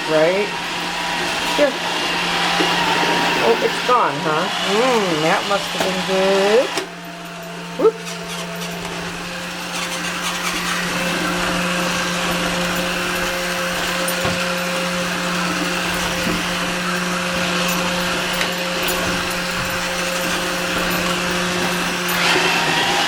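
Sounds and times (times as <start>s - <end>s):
robot vacuum motor whirring: 8.0s - 23.0s.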